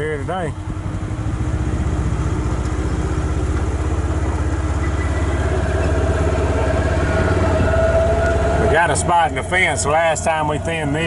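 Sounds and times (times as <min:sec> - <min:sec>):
vehicle engine droning: 0:00.0 - 0:11.0
high steady whine: 0:03.7 - 0:11.0.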